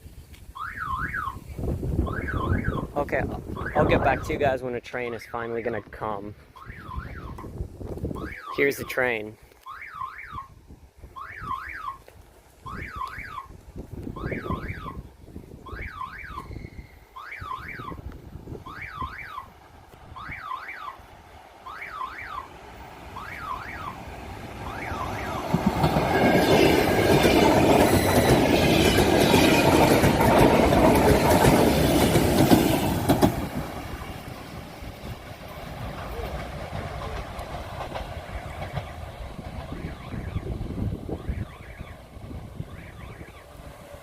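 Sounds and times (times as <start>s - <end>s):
train passing with rushing rail noise: 0.0s - 5.2s, 12.2s - 44.0s
level-crossing signal warbling: 0.6s - 4.4s, 6.6s - 7.4s, 8.2s - 9.0s, 12.7s - 13.5s, 14.2s - 15.0s, 15.7s - 18.0s, 18.6s - 19.5s, 21.6s - 22.5s, 23.2s - 24.0s, 24.6s - 25.5s, 38.3s - 43.7s.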